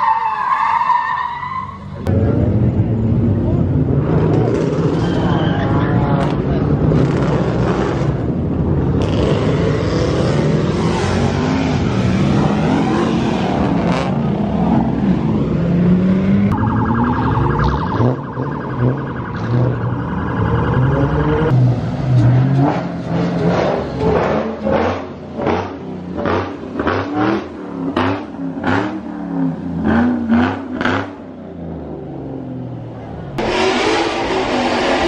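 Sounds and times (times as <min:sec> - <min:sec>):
car engines revving: 0:00.0 - 0:35.0
pulsing electronic alarm tone: 0:16.5 - 0:21.5.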